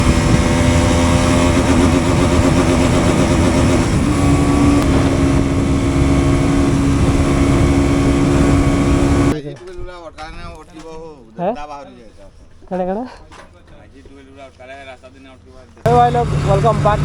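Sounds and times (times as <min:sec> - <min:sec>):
motorcycle engine running hard: 0:00.0 - 0:09.4, 0:15.9 - 0:17.0.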